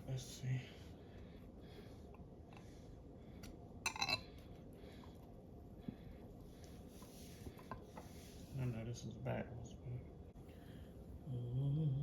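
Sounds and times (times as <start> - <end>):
kitchenware clinking: 3.9 - 4.4.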